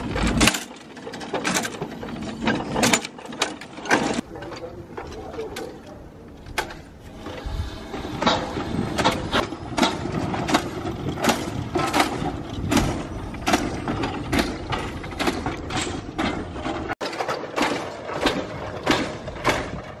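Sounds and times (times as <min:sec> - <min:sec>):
steady mechanical hum: 0:00.0 - 0:20.0
steam engine puffing: 0:07.0 - 0:16.5.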